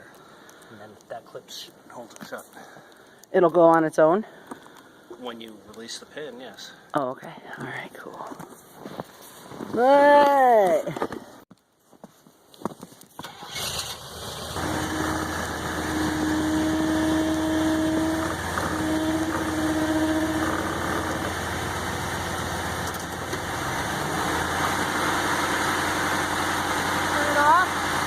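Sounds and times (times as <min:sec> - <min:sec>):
truck engine starting and idling: 0:13.2 - 0:28.0
steady whine: 0:14.6 - 0:28.0.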